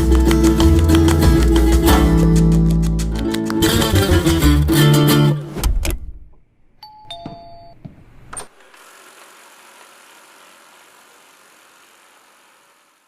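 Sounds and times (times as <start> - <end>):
plucked guitar music: 0.0 - 5.5.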